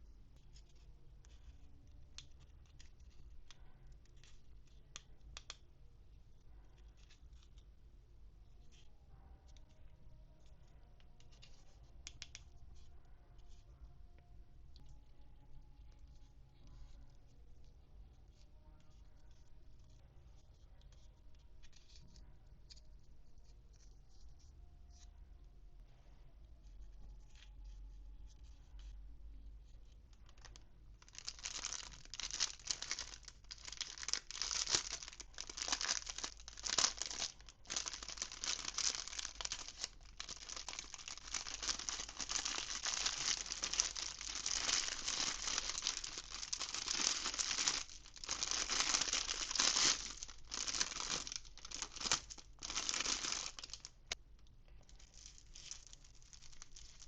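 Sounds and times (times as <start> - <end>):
packaging being torn and crinkled: 30.3 - 54.2, 55.0 - 57.0.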